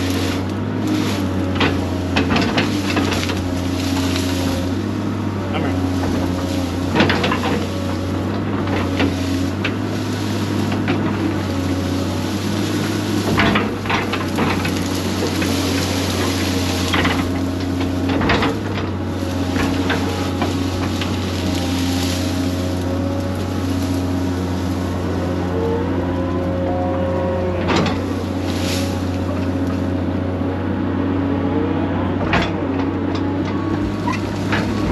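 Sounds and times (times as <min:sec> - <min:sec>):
excavator engine running: 0:00.0 - 0:34.9
bucket knocking and cracking roots: 0:05.6 - 0:24.6.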